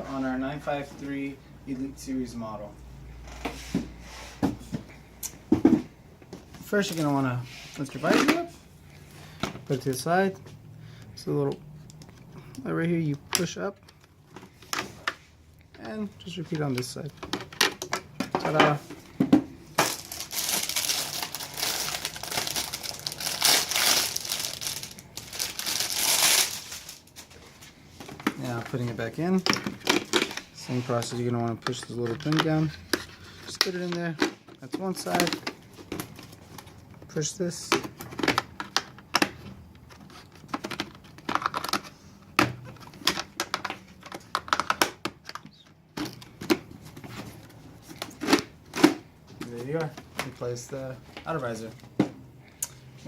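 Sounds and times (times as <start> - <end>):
plastic crinkling and rustling: 19.7 - 52.0.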